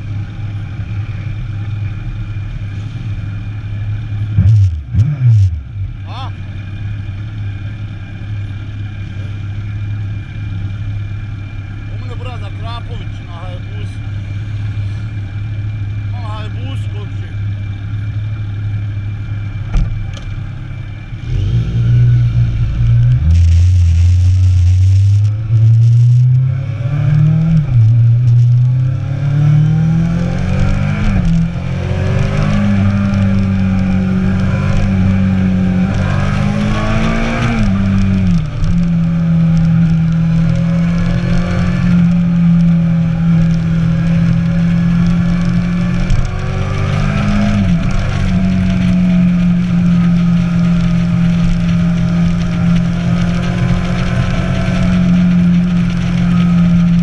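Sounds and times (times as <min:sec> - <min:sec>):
motorcycle engine revving: 0:19.6 - 0:57.0.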